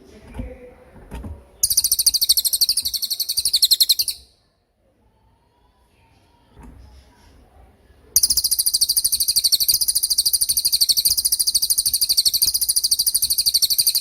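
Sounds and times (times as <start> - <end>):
songbird fast high trill: 1.6 - 4.3, 8.2 - 14.0.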